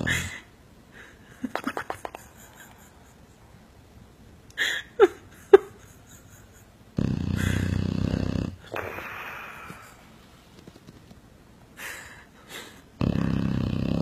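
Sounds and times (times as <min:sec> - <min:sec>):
dog snoring: 0:07.0 - 0:09.6, 0:13.0 - 0:14.0.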